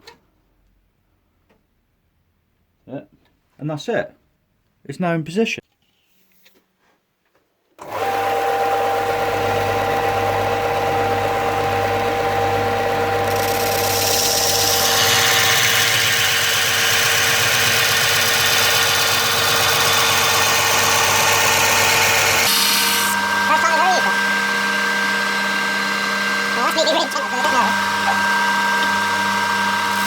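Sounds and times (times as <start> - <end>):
belt grinder motor humming: 7.8 - 30.0.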